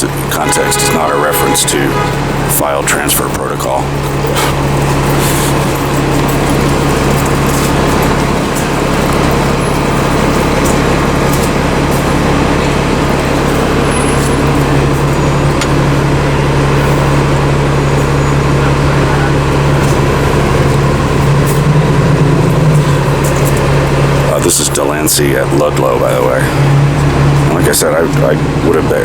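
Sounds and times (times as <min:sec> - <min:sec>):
city street traffic: 0:00.0 - 0:29.0
low hum: 0:00.0 - 0:29.0.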